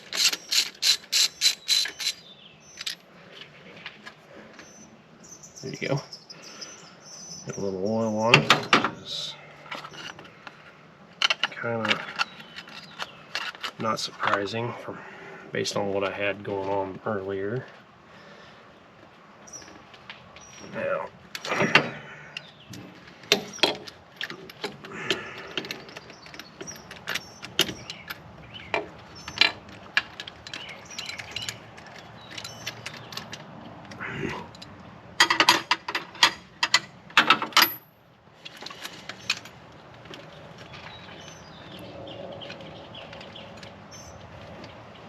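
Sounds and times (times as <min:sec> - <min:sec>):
metal tools clicking and clinking: 0:00.0 - 0:03.0, 0:23.3 - 0:40.2.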